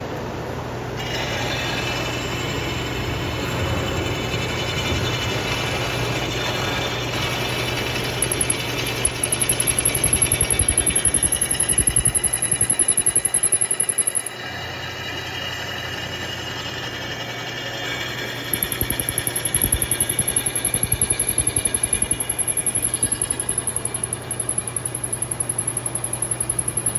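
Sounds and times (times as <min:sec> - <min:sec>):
milling machine motor hum: 0:01.0 - 0:26.9.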